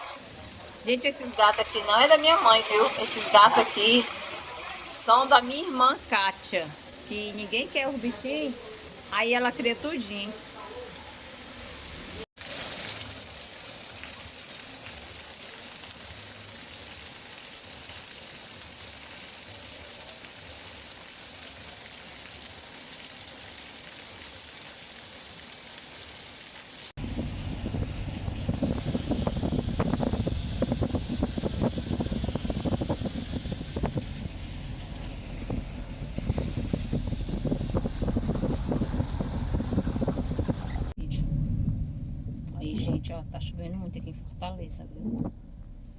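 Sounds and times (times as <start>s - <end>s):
heavy rain hissing: 0.0s - 45.9s
wind buffeting microphone: 27.0s - 45.9s.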